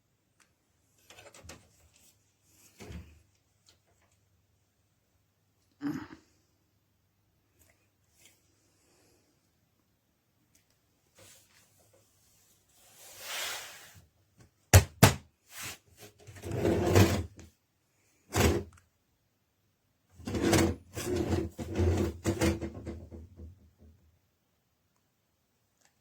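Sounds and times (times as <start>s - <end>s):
table sliding swish: 12.8s - 14.0s
metal table scraping and clattering: 16.3s - 17.4s, 18.3s - 18.7s, 20.2s - 23.2s.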